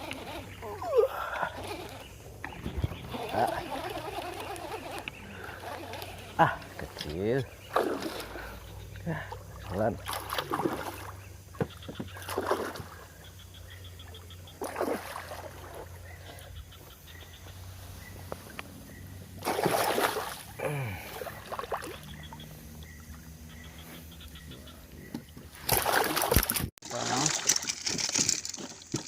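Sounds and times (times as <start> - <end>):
water splashing: 0.0 - 11.3, 12.1 - 13.1, 14.5 - 16.0, 19.4 - 22.5, 25.5 - 29.0.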